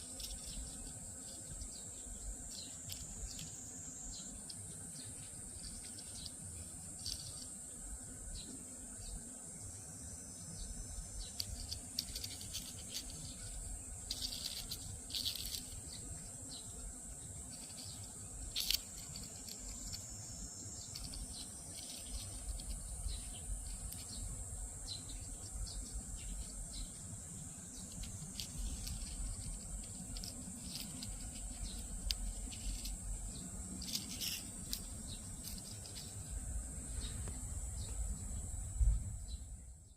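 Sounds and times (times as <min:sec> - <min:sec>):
small clicks and ticks: 0:00.0 - 0:07.6, 0:11.2 - 0:20.2, 0:20.8 - 0:24.3, 0:27.7 - 0:36.3
cicadas buzzing: 0:00.0 - 0:39.9.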